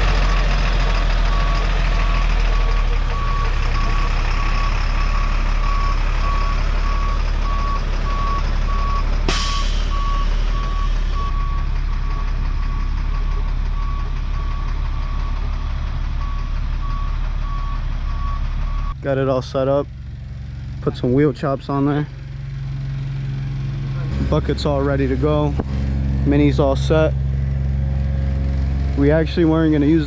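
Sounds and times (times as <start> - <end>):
truck backup alarm beeping: 0.0 - 19.0
truck engine running: 0.0 - 30.0
sharp knock: 9.3 - 11.3.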